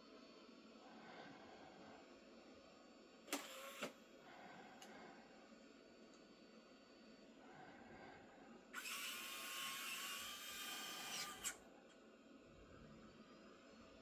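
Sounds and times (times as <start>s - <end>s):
robot vacuum motor whirring: 3.3s - 3.9s, 8.8s - 11.6s.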